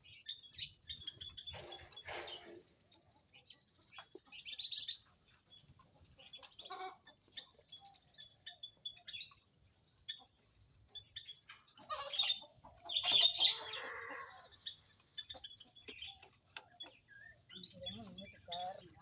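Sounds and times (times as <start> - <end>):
small birds chirping: 0.0 - 19.0
harsh clucking bird call: 6.3 - 8.0, 11.0 - 19.0.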